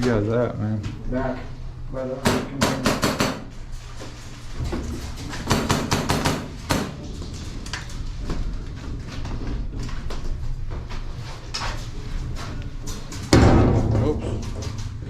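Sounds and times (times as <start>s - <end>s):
airsoft guns firing: 2.2s - 3.5s, 5.5s - 7.0s
low handling rumble: 11.9s - 15.0s.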